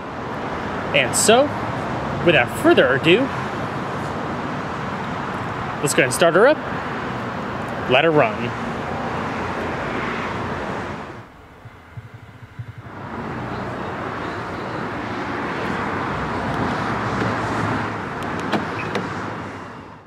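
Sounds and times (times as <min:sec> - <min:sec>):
sports car engine idling: 0:11.2 - 0:15.0.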